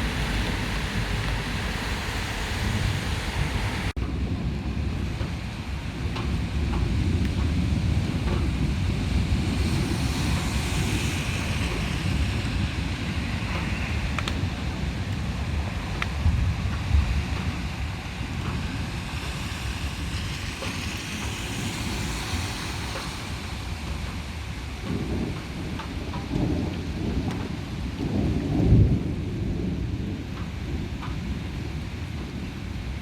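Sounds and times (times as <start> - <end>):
heavy rain hiss: 0.0 - 33.0
thunder rumbling: 0.0 - 33.0.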